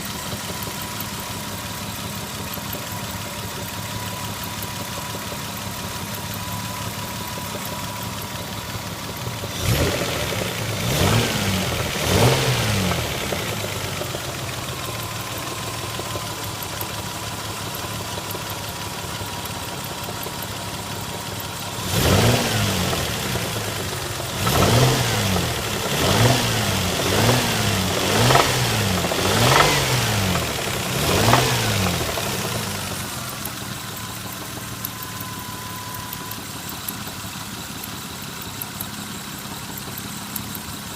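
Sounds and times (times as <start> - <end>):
car engine idling and revving: 0.0 - 40.9.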